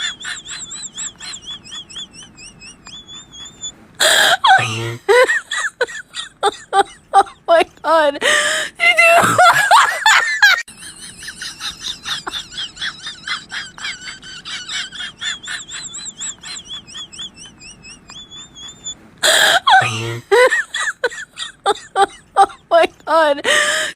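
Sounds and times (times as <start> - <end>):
person laughing hard: 0.0 - 23.9.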